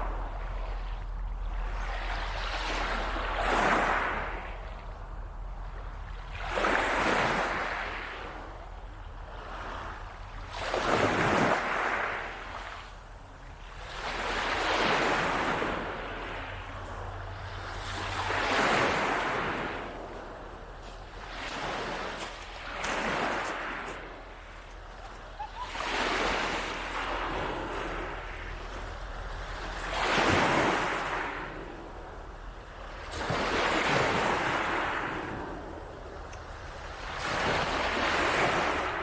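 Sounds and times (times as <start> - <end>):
waves breaking on a beach: 0.0 - 39.0.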